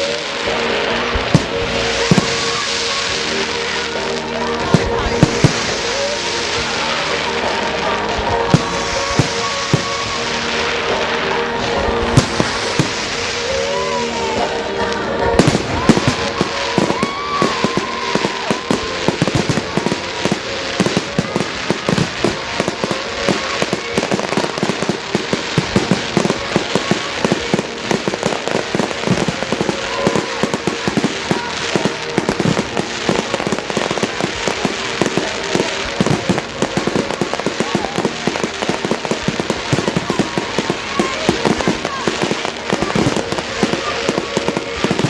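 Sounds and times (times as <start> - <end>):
fireworks shell bursts and crackling: 8.4 - 10.7, 12.0 - 13.6, 15.4 - 45.0.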